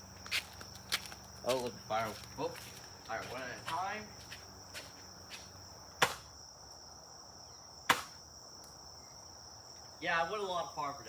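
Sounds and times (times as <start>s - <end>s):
foam dart blaster pops: 6.0s - 6.3s, 7.9s - 8.2s.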